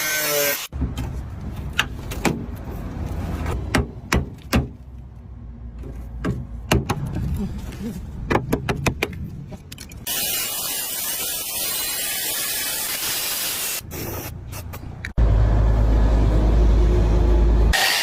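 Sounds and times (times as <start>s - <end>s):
compressed air hissing: 10.1s - 14.3s.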